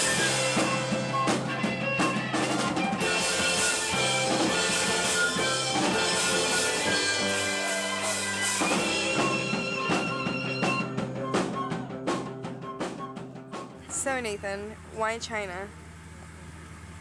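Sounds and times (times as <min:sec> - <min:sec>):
drum beat: 0:00.0 - 0:14.4
sustained pitched instruments: 0:00.0 - 0:15.2.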